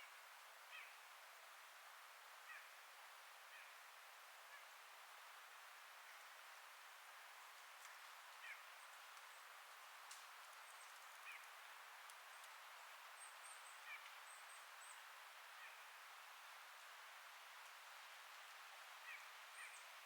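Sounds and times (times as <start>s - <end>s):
wind through trees: 0.0s - 20.0s.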